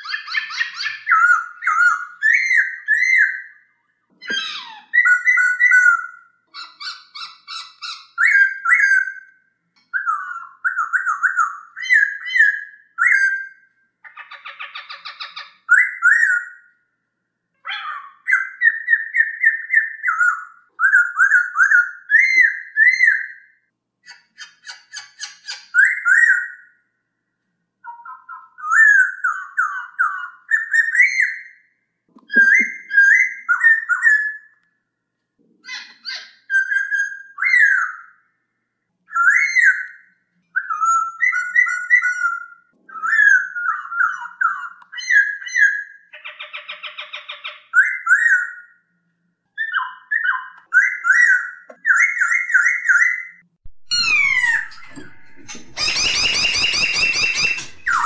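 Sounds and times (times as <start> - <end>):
laughingthrush whistled song: 32.3 - 34.6, 39.1 - 46.1, 49.6 - 58.0
harsh chattering bird notes: 53.9 - 58.0.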